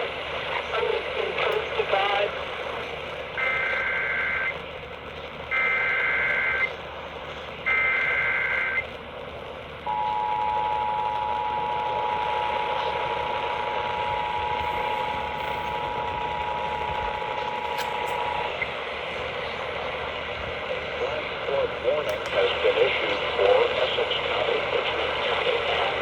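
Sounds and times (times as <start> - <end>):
radio receiver hiss: 0.0 - 26.0
two-tone attention signal: 5.5 - 6.7, 7.7 - 8.8, 9.9 - 18.7
warbling digital data tones: 9.9 - 18.8.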